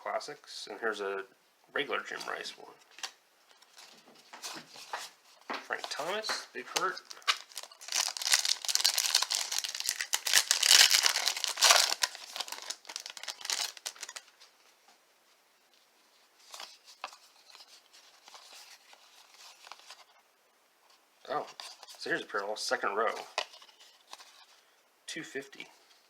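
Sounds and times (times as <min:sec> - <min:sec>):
wrapper tearing and crinkling: 0:05.8 - 0:14.3.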